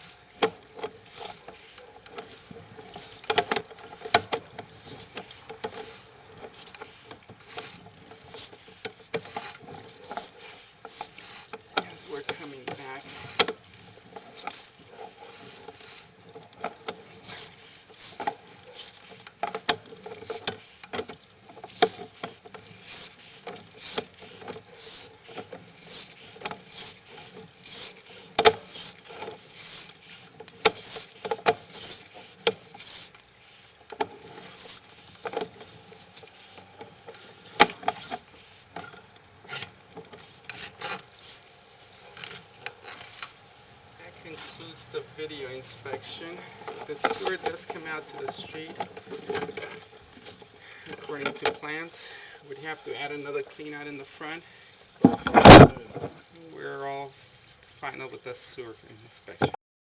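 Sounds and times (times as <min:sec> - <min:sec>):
cable rubbing and scraping: 0:55.0 - 0:56.2.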